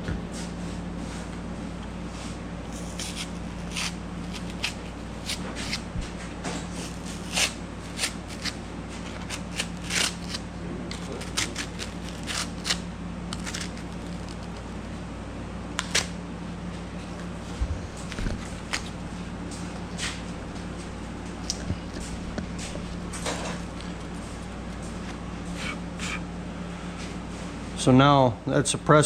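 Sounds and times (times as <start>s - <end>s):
knife scraping through foam: 2.8s - 5.8s, 6.8s - 8.6s.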